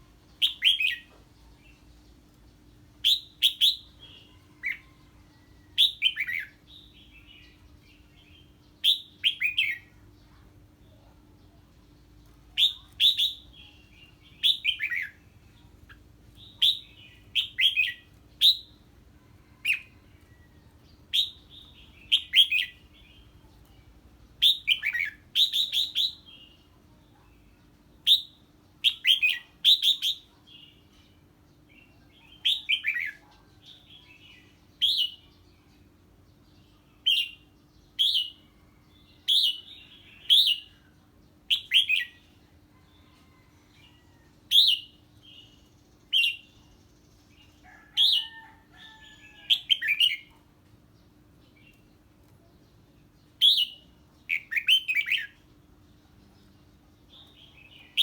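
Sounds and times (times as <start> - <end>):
bird singing short phrases: 0.3 - 1.9, 12.4 - 18.8, 51.5 - 58.0.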